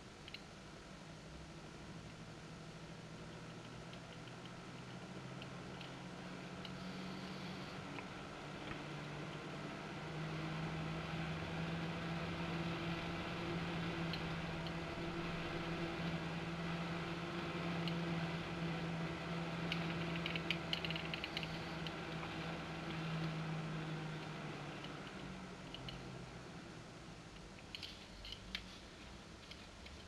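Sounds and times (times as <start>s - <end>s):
computer fan humming: 0.0s - 30.0s
light clicks: 19.6s - 23.4s, 24.2s - 26.1s.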